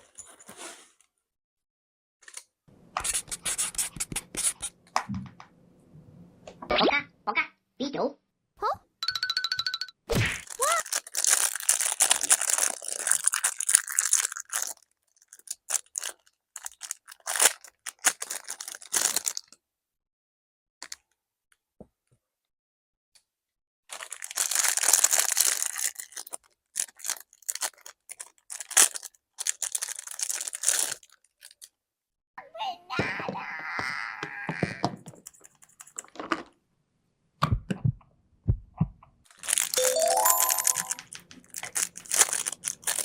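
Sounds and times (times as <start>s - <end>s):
packaging tearing and crinkling: 10.3s - 19.6s, 23.9s - 31.7s, 39.3s - 39.8s, 41.1s - 43.0s.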